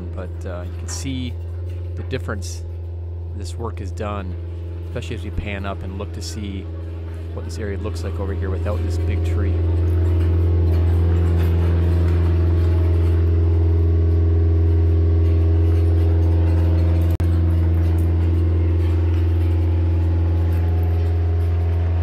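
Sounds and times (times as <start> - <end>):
engine running steadily: 0.0 - 22.0.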